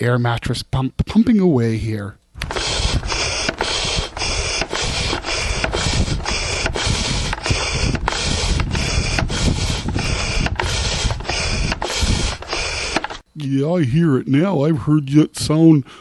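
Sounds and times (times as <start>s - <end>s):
air pump rhythmic hissing: 2.4s - 13.3s.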